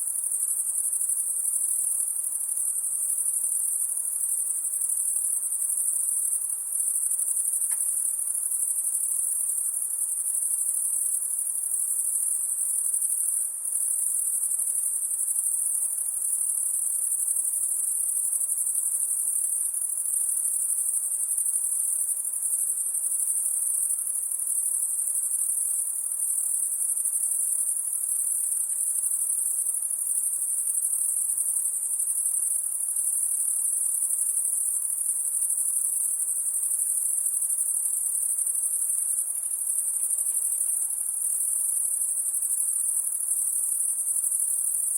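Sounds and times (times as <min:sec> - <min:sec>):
crickets trilling: 0:00.1 - 0:44.9.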